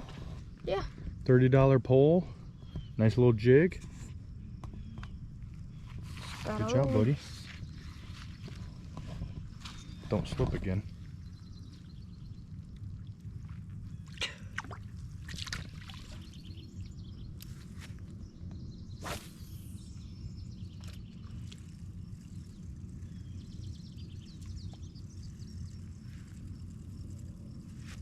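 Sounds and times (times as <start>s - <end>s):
steady low rumble: 0.0s - 28.0s
brief swish: 19.0s - 19.7s.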